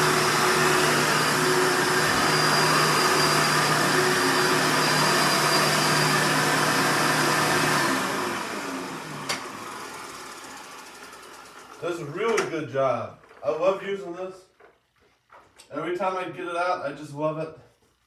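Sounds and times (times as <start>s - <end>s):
vacuum motor winding down: 0.0s - 12.4s
vacuum cleaner whining: 0.0s - 12.5s.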